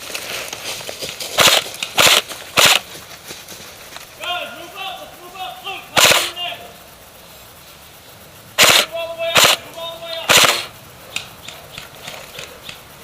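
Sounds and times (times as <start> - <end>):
airsoft guns firing bursts: 1.4 - 2.9, 6.0 - 6.4, 8.6 - 10.8.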